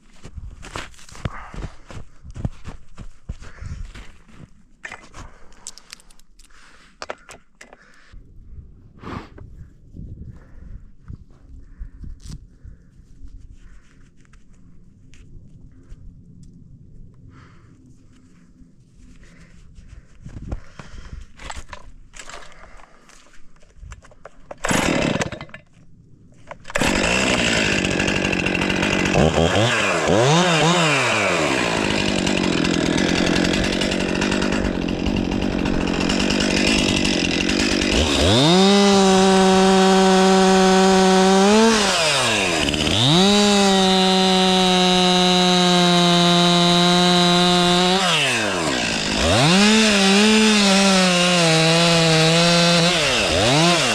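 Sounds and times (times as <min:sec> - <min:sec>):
chainsaw revving: 0:24.6 - 0:25.6, 0:26.7 - 0:53.9.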